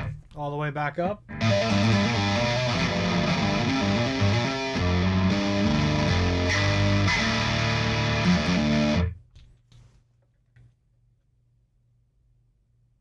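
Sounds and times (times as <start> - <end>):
distorted electric guitar riff: 1.2 - 9.2.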